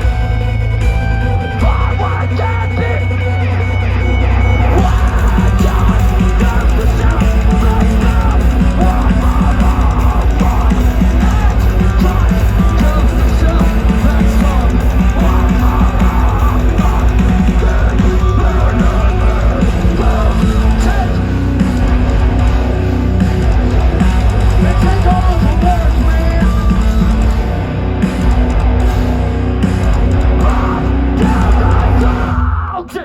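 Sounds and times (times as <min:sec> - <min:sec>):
bass guitar: 0:00.0 - 0:33.0
distorted electric guitars: 0:00.0 - 0:33.0
pounding drums: 0:00.0 - 0:33.0
person singing: 0:01.5 - 0:03.4, 0:04.6 - 0:21.9, 0:24.4 - 0:27.4, 0:30.3 - 0:33.0.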